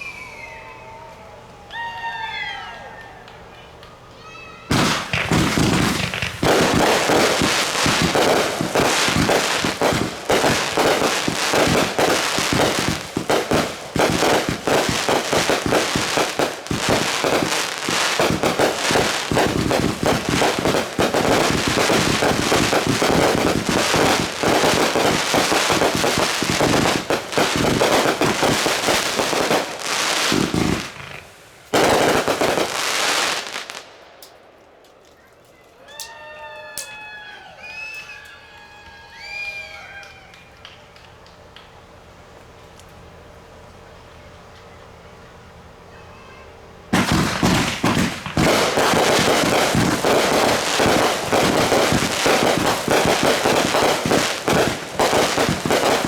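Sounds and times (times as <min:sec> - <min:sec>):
fireworks bangs and crackles: 0:04.7 - 0:34.4, 0:46.9 - 0:56.0.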